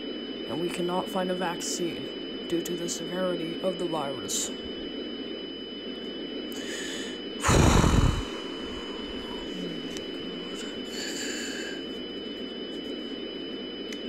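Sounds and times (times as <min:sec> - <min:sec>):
thin high whine: 0:00.0 - 0:14.0
breathy puffs: 0:06.6 - 0:11.9.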